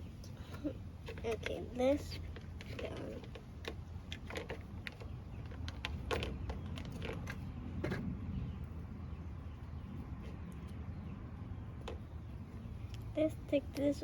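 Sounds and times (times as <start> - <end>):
low steady hum: 0.0 - 14.0
small toys clicking and tapping: 1.0 - 8.0.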